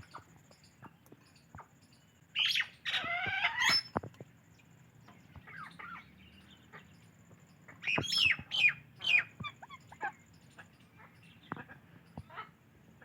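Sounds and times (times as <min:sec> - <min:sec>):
parakeets chirping: 0:02.4 - 0:04.0, 0:05.2 - 0:12.6.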